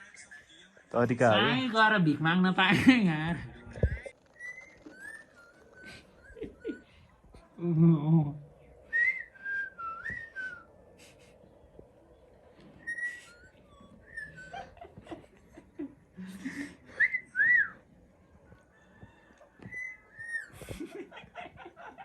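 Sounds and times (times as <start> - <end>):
short gliding whistled notes: 12.6 - 14.7.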